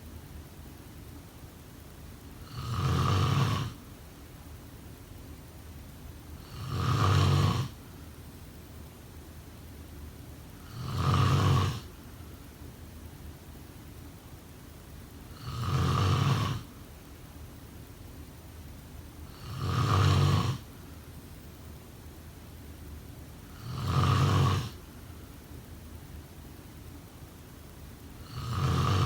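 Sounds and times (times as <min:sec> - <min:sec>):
person snoring: 0:02.4 - 0:03.8, 0:06.4 - 0:07.8, 0:10.6 - 0:11.9, 0:15.4 - 0:16.7, 0:19.3 - 0:20.7, 0:23.5 - 0:24.8, 0:28.2 - 0:29.0.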